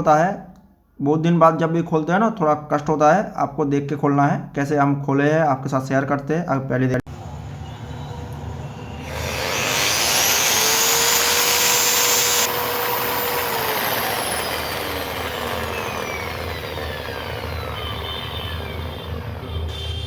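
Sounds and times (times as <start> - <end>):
electric motor whirring and winding down: 8.2 - 19.9.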